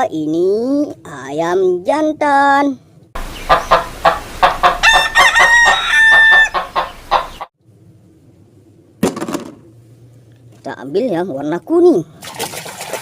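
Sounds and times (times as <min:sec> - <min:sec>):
rooster clucking: 0:03.2 - 0:07.5
rooster crowing: 0:03.4 - 0:07.5.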